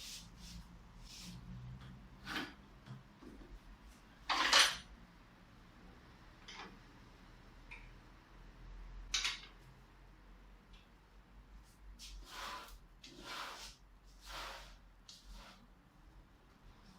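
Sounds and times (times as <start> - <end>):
metal parts clattering: 4.3 - 4.8.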